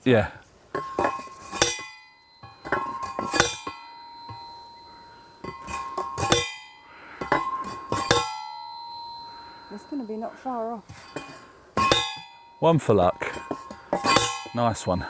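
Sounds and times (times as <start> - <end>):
post driver striking fence post: 0.8 - 4.5, 5.4 - 6.6, 10.9 - 15.0.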